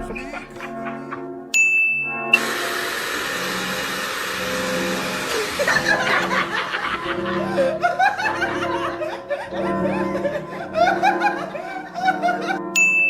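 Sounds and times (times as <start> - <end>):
people laughing: 0.0 - 1.5, 4.6 - 12.6
background music: 0.0 - 13.0.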